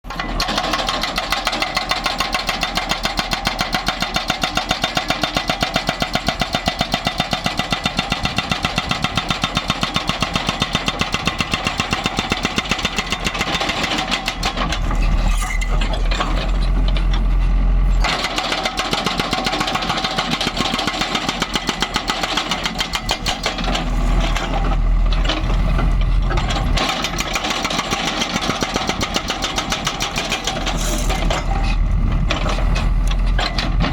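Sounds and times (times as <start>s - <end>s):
hydraulic breaker hammering concrete: 0.1s - 14.9s, 18.0s - 24.6s, 26.3s - 31.5s
diesel engine rumble: 14.2s - 18.2s, 22.8s - 27.5s, 28.8s - 33.9s.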